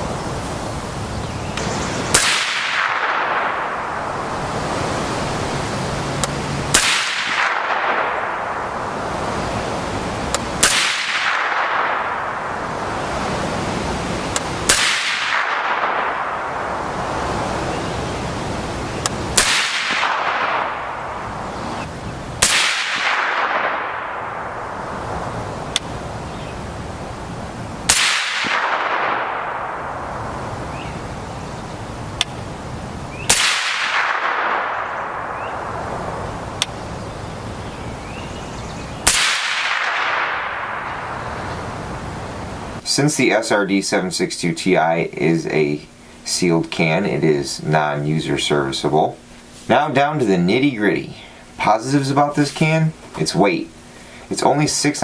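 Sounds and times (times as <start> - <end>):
gunshot echo: 1.6 - 4.5, 6.7 - 9.0, 10.6 - 12.8, 14.6 - 17.2, 19.4 - 25.3, 27.9 - 30.9, 33.2 - 36.7, 39.0 - 41.8
suppressed rifle shots: 1.6 - 4.5, 6.2 - 9.6, 10.3 - 13.2, 14.3 - 17.1, 19.0 - 25.9, 27.8 - 31.0, 33.2 - 36.8, 39.0 - 41.8.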